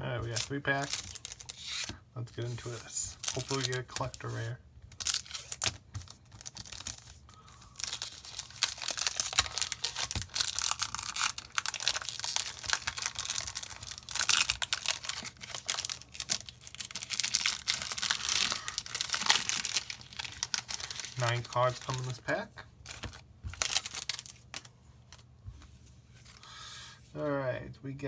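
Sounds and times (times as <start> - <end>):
foil wrapper crinkling and tearing: 0.2 - 2.0, 2.6 - 24.7.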